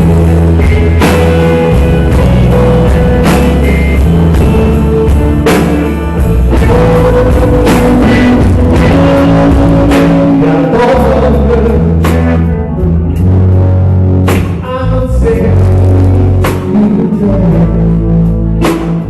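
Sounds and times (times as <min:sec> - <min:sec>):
rock band playing: 0:00.0 - 0:19.0.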